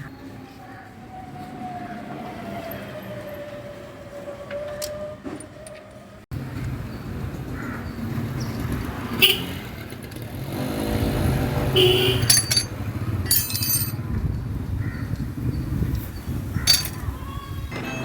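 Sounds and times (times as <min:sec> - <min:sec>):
street traffic: 0:00.0 - 0:18.0
motorcycle engine: 0:06.4 - 0:15.7
sharp metallic clinks: 0:11.8 - 0:14.0, 0:16.0 - 0:17.2.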